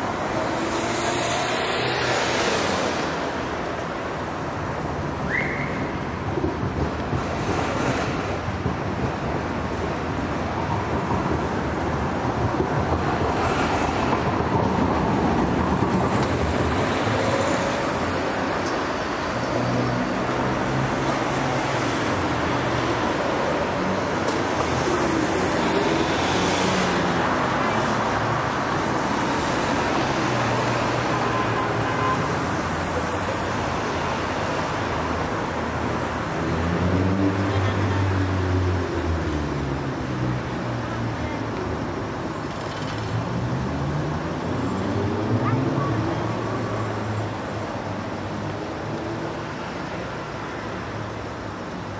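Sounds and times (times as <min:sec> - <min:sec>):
cars and buses passing: 0:00.0 - 0:51.9
road traffic noise: 0:00.0 - 0:51.9
faint voices of passers-by: 0:12.0 - 0:51.9.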